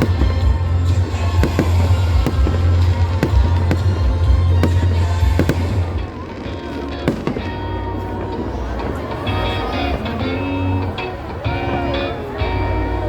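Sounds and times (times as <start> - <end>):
fireworks bangs: 0.0 - 10.1
music playing: 0.0 - 13.0.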